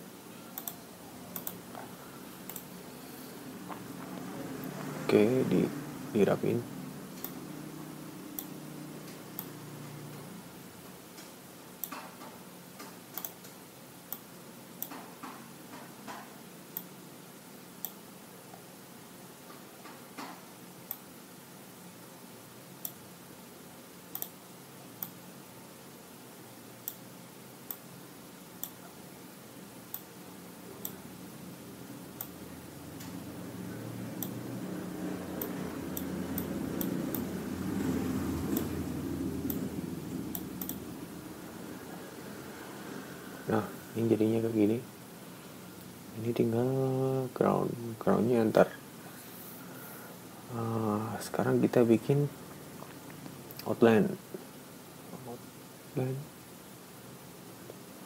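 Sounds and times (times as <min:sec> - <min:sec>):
low background hum: 0:00.0 - 0:58.0
computer mouse clicks: 0:00.6 - 0:00.8, 0:01.4 - 0:01.8, 0:02.4 - 0:02.7, 0:11.2 - 0:12.1, 0:12.8 - 0:15.1, 0:17.8 - 0:18.0, 0:24.1 - 0:24.4, 0:26.8 - 0:27.0, 0:28.6 - 0:28.8, 0:32.2 - 0:32.4, 0:35.4 - 0:37.3, 0:40.3 - 0:40.8.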